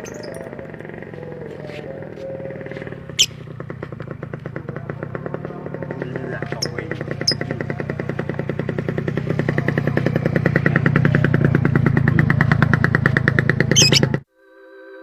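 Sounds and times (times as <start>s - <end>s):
bird chirp: 0.0s - 3.6s, 6.4s - 7.7s, 13.7s - 14.2s
motorcycle engine running: 0.0s - 14.2s.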